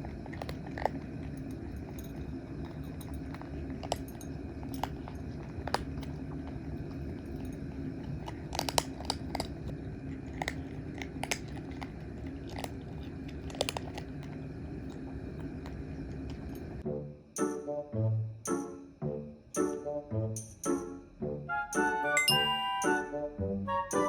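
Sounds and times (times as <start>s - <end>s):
cats crunching dry food: 0.0s - 16.8s
steady low hum: 0.0s - 21.5s.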